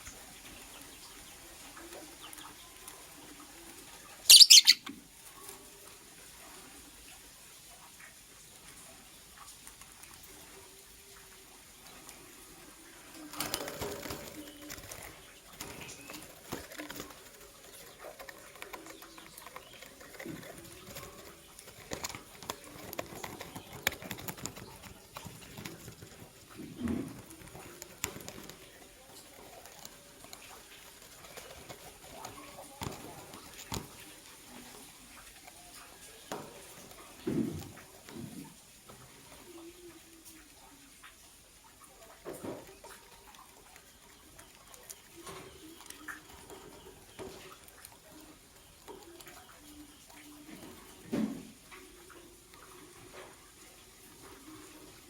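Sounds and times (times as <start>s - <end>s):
birds clicking and tapping in cage: 0.0s - 55.0s.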